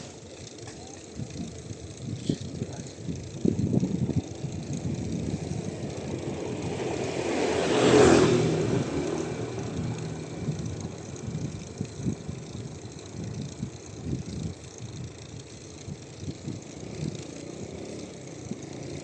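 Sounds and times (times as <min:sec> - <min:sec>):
motor vehicle passing by: 0:04.1 - 0:14.5, 0:16.2 - 0:19.0.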